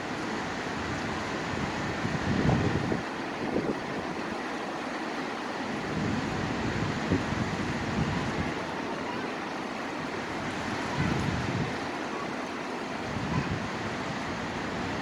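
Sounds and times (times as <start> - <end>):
wind buffeting microphone: 0.8 - 4.2, 10.2 - 11.9, 13.0 - 15.0.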